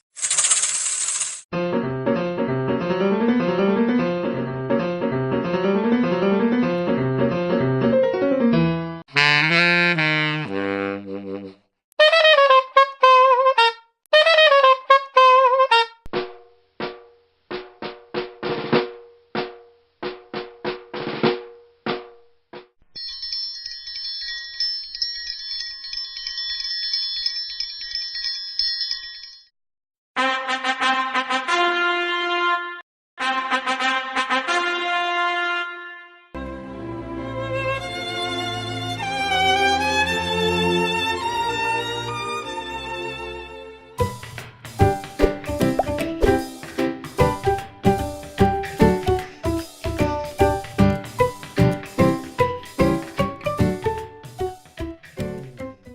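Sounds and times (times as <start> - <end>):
lively piano tune: 1.6 - 9.0, 44.9 - 55.9
metal bell roll: 23.0 - 29.5.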